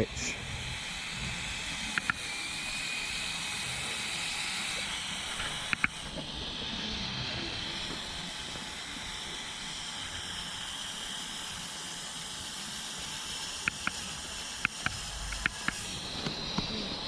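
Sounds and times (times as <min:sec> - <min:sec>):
small electric motor whine: 0:00.0 - 0:17.0
sharp plastic clicks: 0:05.7 - 0:06.0, 0:14.6 - 0:15.8.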